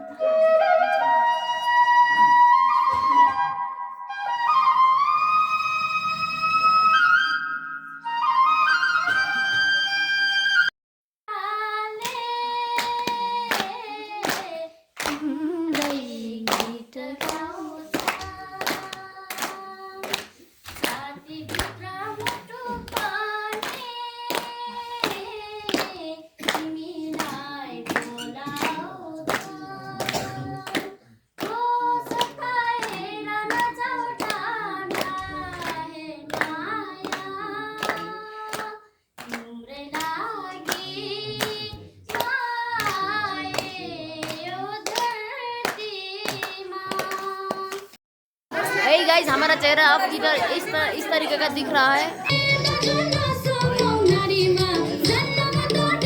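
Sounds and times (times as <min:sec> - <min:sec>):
flute music: 0:00.0 - 0:10.7, 0:52.2 - 0:56.0
person singing: 0:11.3 - 0:19.8, 0:39.4 - 0:45.2, 0:52.0 - 0:56.0
hand clapping in steady beat: 0:12.0 - 0:48.0, 0:52.2 - 0:56.0.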